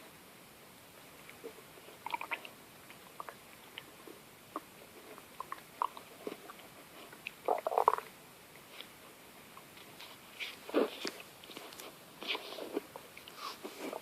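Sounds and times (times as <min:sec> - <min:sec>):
stomach gurgling: 0:01.3 - 0:08.2.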